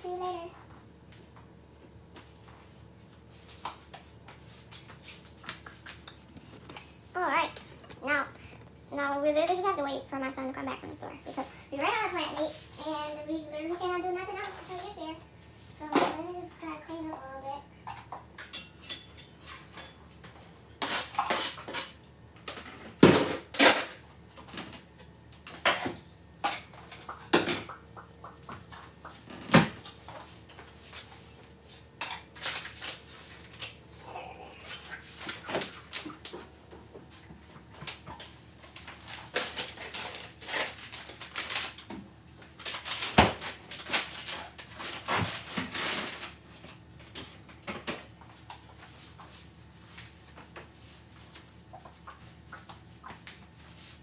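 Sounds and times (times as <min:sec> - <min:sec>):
dishes and cutlery clattering: 0:18.5 - 0:20.0.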